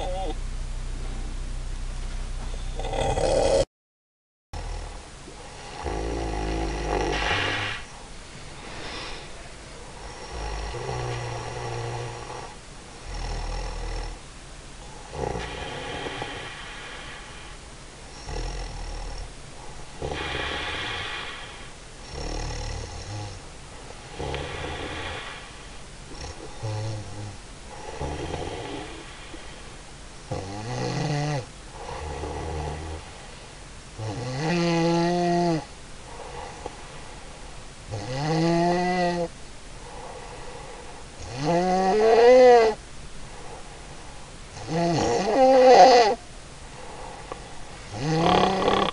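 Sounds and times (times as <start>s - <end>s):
woman snoring: 0.0s - 0.4s, 2.5s - 3.7s, 4.6s - 7.9s, 10.0s - 14.2s, 15.1s - 17.5s, 18.1s - 19.3s, 20.0s - 23.4s, 24.0s - 29.7s, 30.3s - 33.1s, 34.0s - 36.8s, 37.9s - 39.3s, 41.2s - 42.8s, 44.6s - 46.2s, 46.8s - 48.9s.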